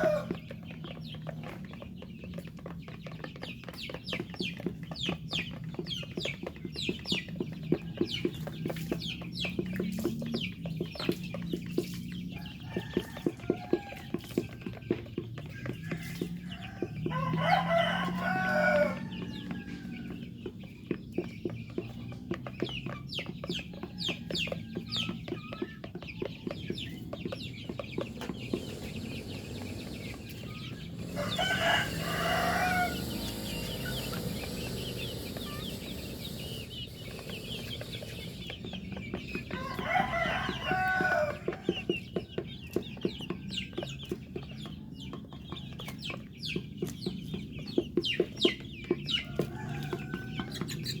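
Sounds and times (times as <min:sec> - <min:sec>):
rooster crowing: 0:00.0 - 0:00.4, 0:16.5 - 0:20.2, 0:30.9 - 0:34.5, 0:39.5 - 0:41.8, 0:49.3 - 0:51.0
chickens clucking: 0:00.0 - 0:51.0.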